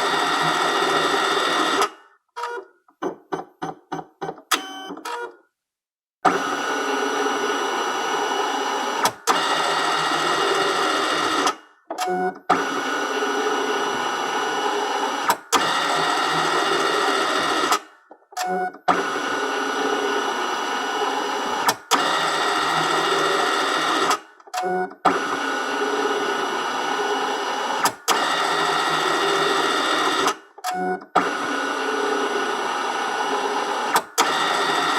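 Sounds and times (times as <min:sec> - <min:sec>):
scanner motor whirring: 0:19.0 - 0:34.9.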